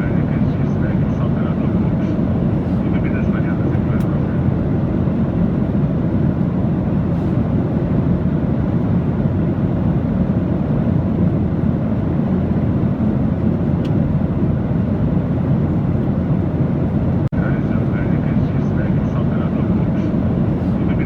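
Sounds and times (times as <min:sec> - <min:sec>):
aircraft in flight rumble: 0:00.0 - 0:21.0.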